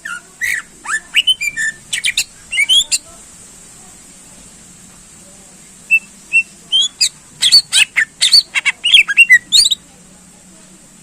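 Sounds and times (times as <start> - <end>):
bird singing sharp whistled notes: 0.4 - 3.0, 5.9 - 9.8.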